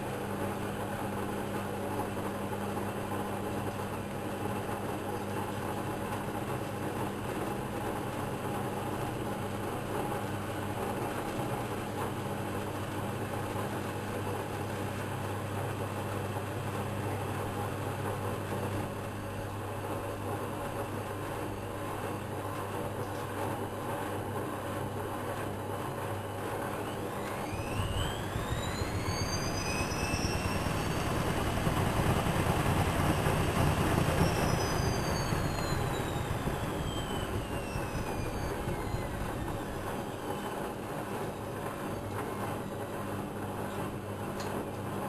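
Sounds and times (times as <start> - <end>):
steady machine hum: 0.0 - 45.0
washing machine motor whining: 25.3 - 43.6.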